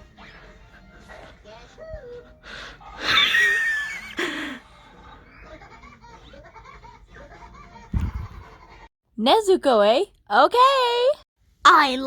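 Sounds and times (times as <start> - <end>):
high-pitched laughter: 3.0 - 4.6.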